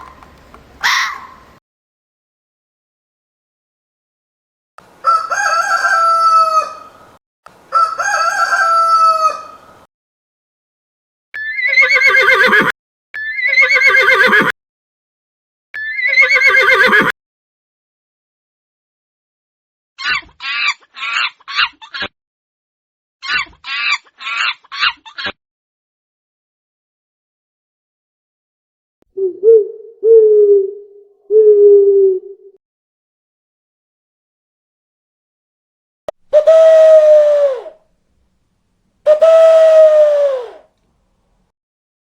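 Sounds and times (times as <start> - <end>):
rooster crowing: 0.8 - 1.4, 5.0 - 7.0, 7.7 - 9.6, 36.4 - 37.7, 39.1 - 40.6.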